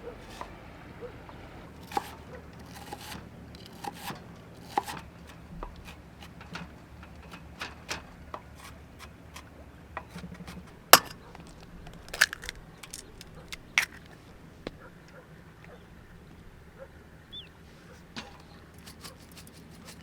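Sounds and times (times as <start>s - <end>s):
small hard objects clicking: 11.0s - 14.2s.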